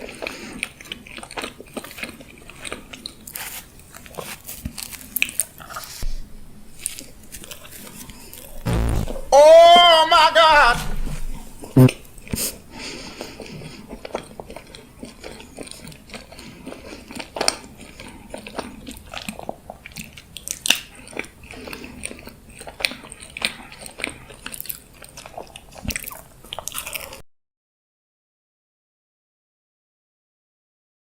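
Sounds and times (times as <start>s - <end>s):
crunchy chewing: 0.0s - 6.1s, 6.8s - 8.6s, 11.3s - 27.2s
sharp crackles: 8.6s - 9.4s.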